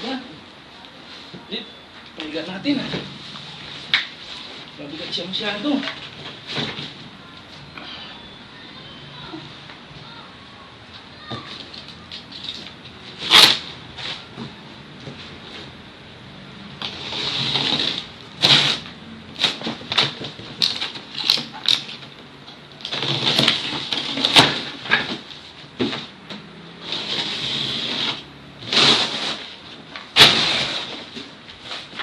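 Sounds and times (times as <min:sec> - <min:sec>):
plastic and cardboard rustling: 0:02.2 - 0:07.7, 0:16.8 - 0:26.2, 0:26.8 - 0:32.0.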